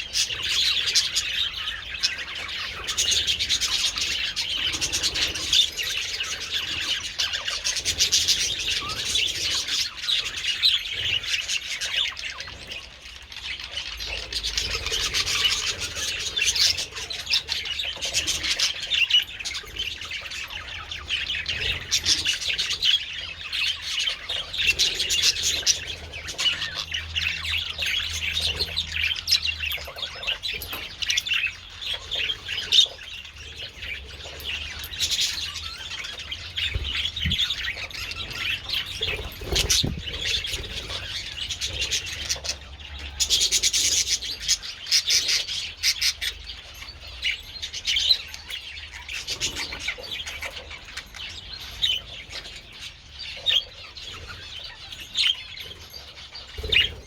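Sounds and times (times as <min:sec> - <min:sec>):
budgerigars chattering and warbling: 0:00.0 - 0:57.0.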